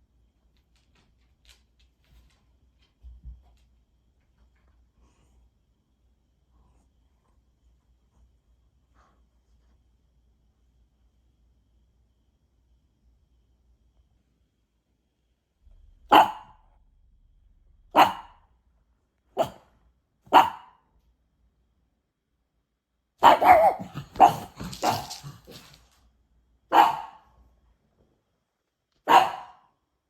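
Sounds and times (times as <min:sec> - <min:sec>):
dog barking: 0:16.1 - 0:16.6, 0:17.9 - 0:18.4, 0:19.4 - 0:19.7, 0:20.3 - 0:20.9, 0:23.2 - 0:25.7, 0:26.7 - 0:27.3, 0:29.0 - 0:29.7.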